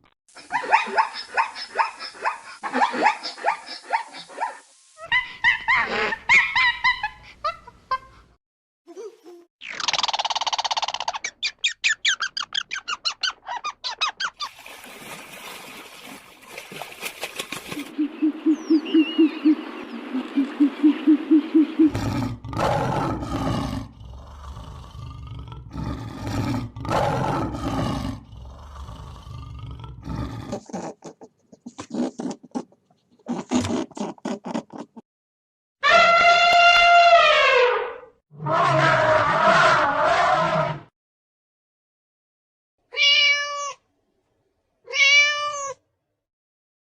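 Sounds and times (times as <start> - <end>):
loud animal call: 35.8 - 40.8.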